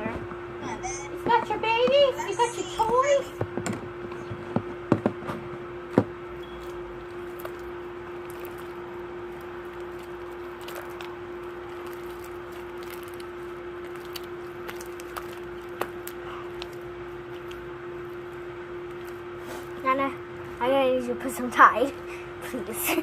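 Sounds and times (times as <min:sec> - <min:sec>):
steady hum: 0:00.0 - 0:23.0
glue stirring squishes: 0:06.4 - 0:20.6.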